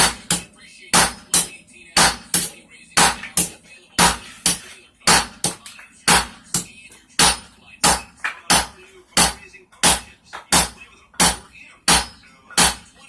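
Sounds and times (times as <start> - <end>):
hammer striking metal on anvil: 0.0 - 12.9.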